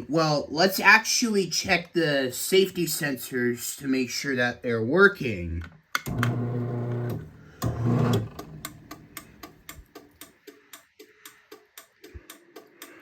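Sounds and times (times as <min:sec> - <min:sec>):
garage door opener clicking: 0:06.0 - 0:09.8.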